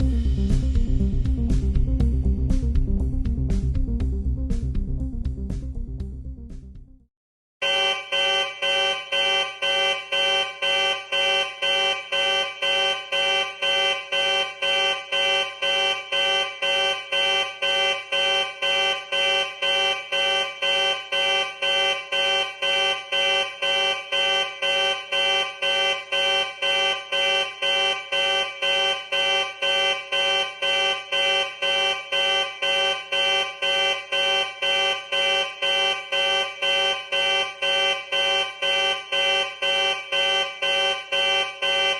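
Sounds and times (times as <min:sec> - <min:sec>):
pulsing alarm tone: 0:07.6 - 0:41.9.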